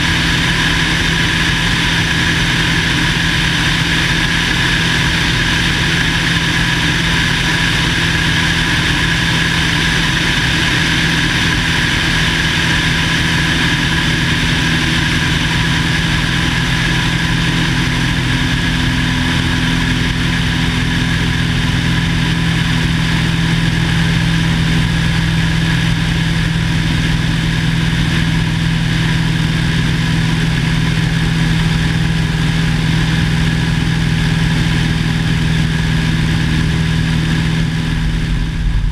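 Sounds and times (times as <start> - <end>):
light aircraft engine and propeller: 0.0 - 38.9.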